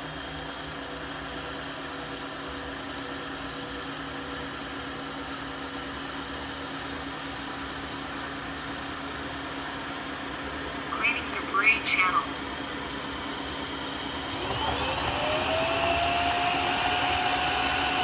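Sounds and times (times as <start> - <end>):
vacuum motor whirring hum: 13.4 - 18.0.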